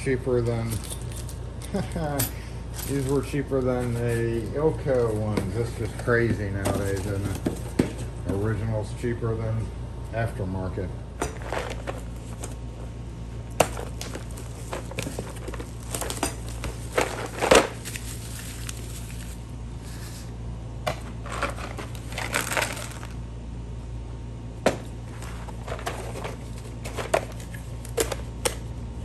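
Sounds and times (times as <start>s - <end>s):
steady low hum: 0.0s - 29.0s
packaging crinkling and rustling: 5.0s - 7.9s, 11.2s - 12.6s, 13.6s - 20.3s, 20.9s - 23.2s, 24.7s - 28.6s.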